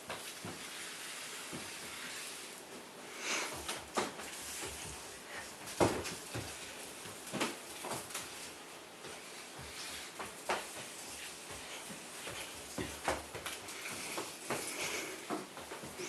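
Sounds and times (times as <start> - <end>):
light knocks and scuffs: 3.5 - 16.0.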